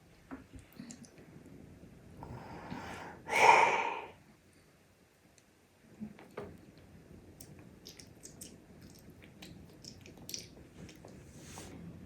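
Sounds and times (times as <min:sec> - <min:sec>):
child chewing food: 0:07.4 - 0:11.7.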